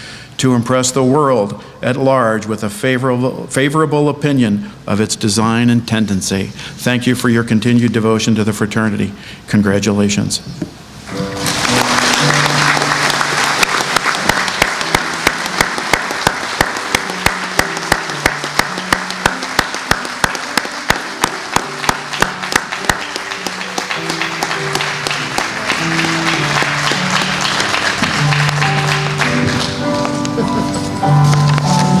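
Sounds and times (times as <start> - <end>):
audience applauding: 11.1 - 32.0
music of held low notes: 11.1 - 32.0
sharp tapping beat: 11.7 - 29.8.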